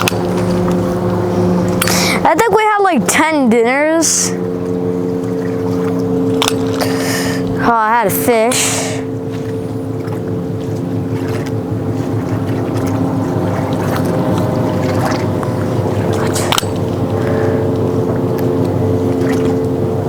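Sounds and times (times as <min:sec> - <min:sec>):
motorboat engine drone: 0:00.0 - 0:20.0.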